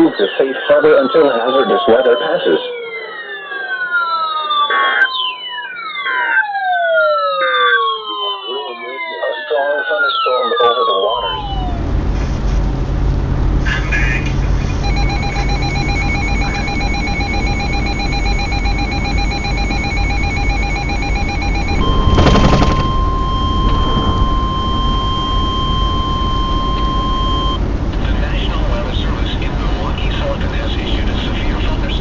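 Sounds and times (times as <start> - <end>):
radio hiss: 0.0 - 2.6
steady single-pitch alarm tone: 0.9 - 11.8, 14.7 - 27.6
pulsing electronic alert beep: 14.7 - 27.6
loud burst of static: 20.9 - 26.4.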